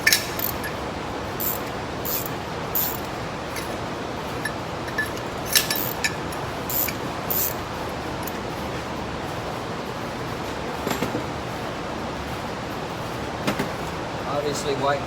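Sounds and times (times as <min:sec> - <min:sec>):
tools clicking and tapping: 0:00.0 - 0:08.4
steady background hiss: 0:00.0 - 0:09.1.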